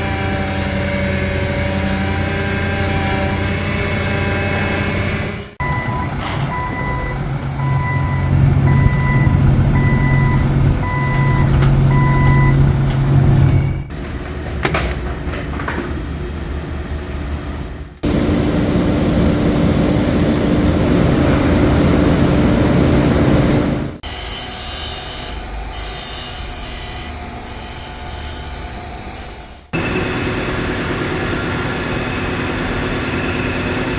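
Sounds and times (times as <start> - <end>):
heavy machine engine running: 0.0 - 24.0, 29.6 - 33.9
industrial machine hum: 0.0 - 33.9
reversing alarm beeping: 5.3 - 18.0.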